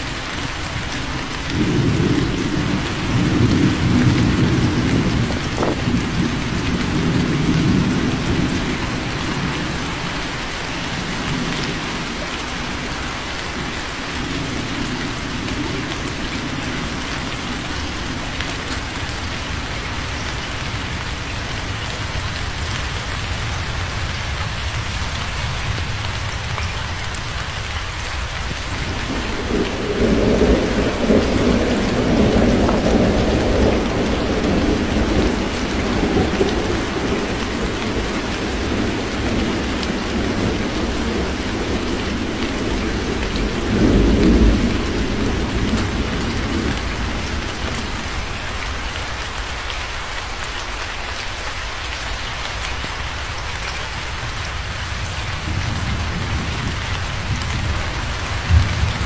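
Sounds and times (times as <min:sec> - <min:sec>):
heavy rain falling: 0:00.0 - 0:59.0
rolling thunder: 0:01.3 - 0:10.2, 0:28.3 - 0:48.9, 0:54.9 - 0:59.0.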